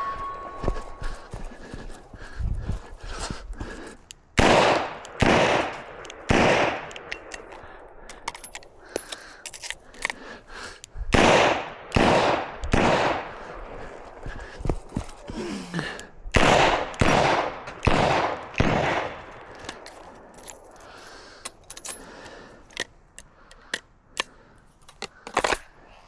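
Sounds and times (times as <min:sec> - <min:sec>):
small clicks and knocks: 0:05.0 - 0:10.9, 0:16.9 - 0:24.3.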